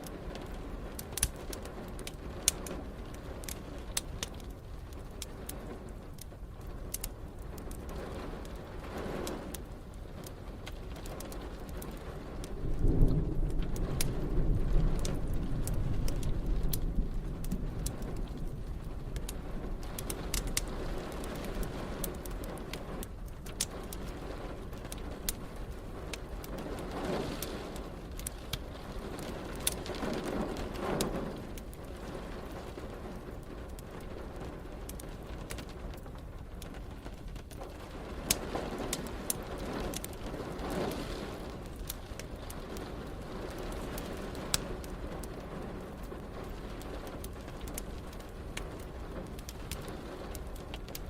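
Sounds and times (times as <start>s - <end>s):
rain pattering: 0.0s - 51.0s
wood fire crackling and popping: 0.0s - 51.0s
thunder rumbling: 12.0s - 22.9s.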